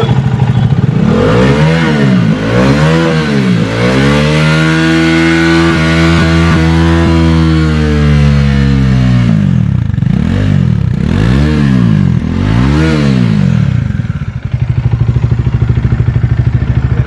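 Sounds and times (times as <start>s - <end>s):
motorcycle engine idling: 0.0s - 5.8s, 8.8s - 11.2s, 11.8s - 17.0s
motorcycle engine revving: 0.0s - 17.0s.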